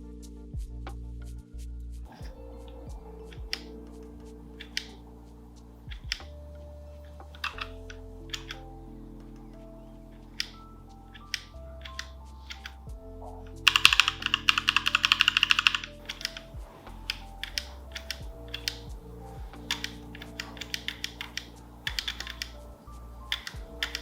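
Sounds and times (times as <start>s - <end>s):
mechanical keyboard typing: 13.6s - 18.9s, 19.5s - 22.6s, 23.3s - 24.0s.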